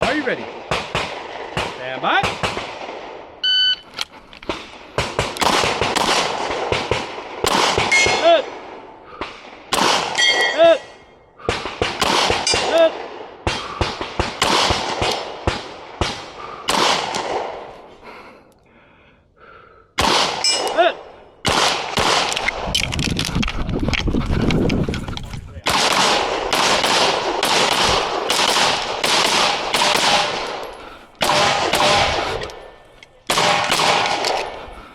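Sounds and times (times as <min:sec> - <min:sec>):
pistol shots: 0:00.0 - 0:03.3, 0:04.5 - 0:10.4, 0:11.4 - 0:17.7, 0:20.0 - 0:20.8, 0:21.4 - 0:22.8, 0:25.6 - 0:32.6, 0:33.3 - 0:34.6.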